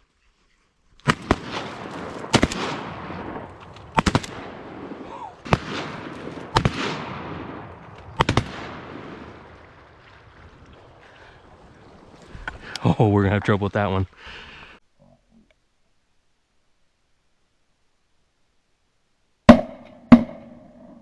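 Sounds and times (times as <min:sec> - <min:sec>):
shotgun shots with echo: 0:01.1 - 0:09.6, 0:19.5 - 0:21.0.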